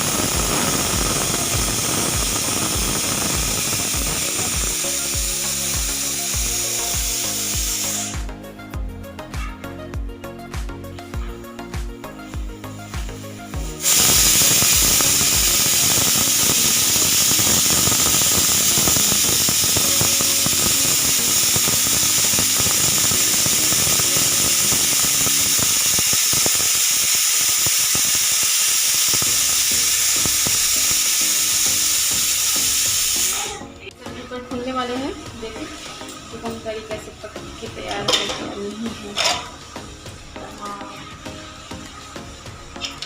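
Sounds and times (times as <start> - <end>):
pressure cooker whistle hissing: 0.0 - 8.3, 13.5 - 33.7.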